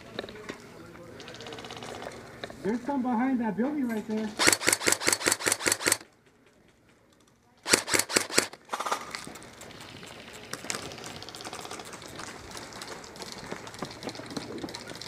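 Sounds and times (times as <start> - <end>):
airsoft rifle shots: 4.4 - 6.0, 7.6 - 9.2.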